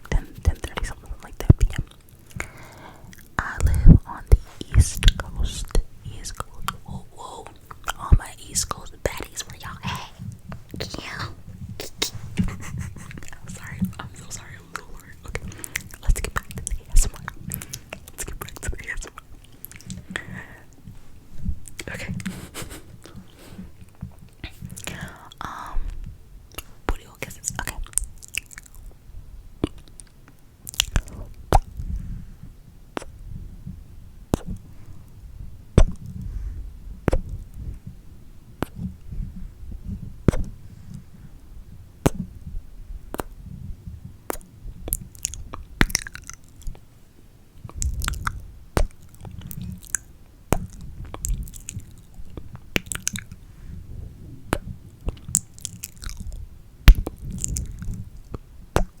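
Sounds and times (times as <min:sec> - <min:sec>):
tongue clicks and lip smacks: 0:00.0 - 0:20.9, 0:21.6 - 0:29.0, 0:29.6 - 0:32.0, 0:33.0 - 0:33.2, 0:34.3 - 0:34.7, 0:35.8 - 0:36.3, 0:37.0 - 0:37.7, 0:38.6 - 0:39.0, 0:40.2 - 0:41.0, 0:42.0 - 0:42.3, 0:43.1 - 0:43.4, 0:44.2 - 0:46.8, 0:47.6 - 0:53.4, 0:54.5 - 0:59.0
breathing: 0:02.4 - 0:03.2, 0:15.4 - 0:15.9, 0:19.9 - 0:21.1, 0:22.2 - 0:23.8, 0:24.8 - 0:26.0, 0:31.9 - 0:32.5, 0:36.2 - 0:36.7.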